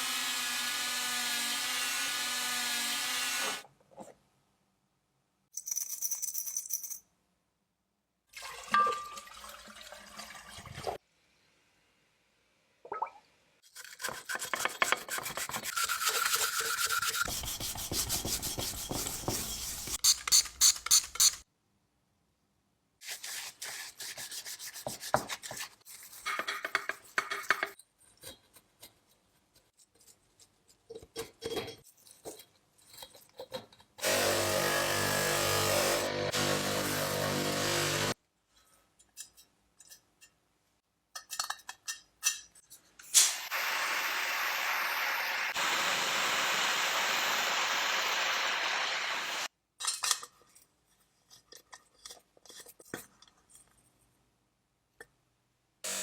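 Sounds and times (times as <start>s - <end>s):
small power tool running: 0.0s - 3.6s, 34.0s - 38.2s.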